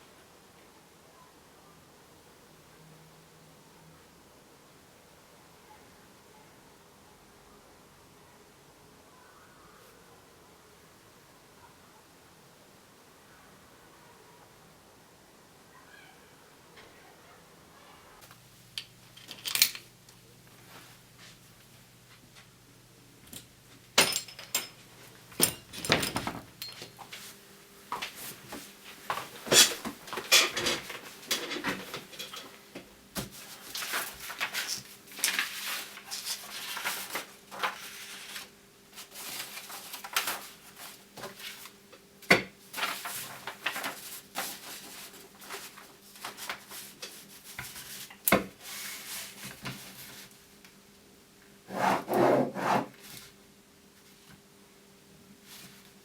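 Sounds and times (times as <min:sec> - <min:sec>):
faint steady hum: 0:00.0 - 0:56.0
rustling: 0:33.2 - 0:41.8
objects rubbing and scraping: 0:51.7 - 0:53.0.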